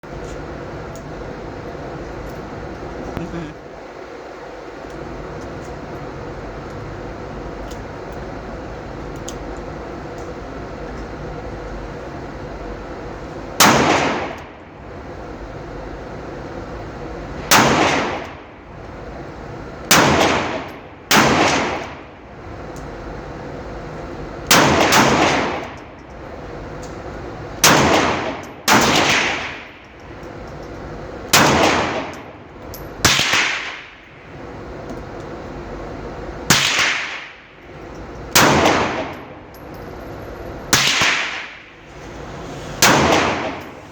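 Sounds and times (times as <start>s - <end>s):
steady background noise: 0.0s - 43.9s
pistol shots echoing: 40.8s - 41.6s.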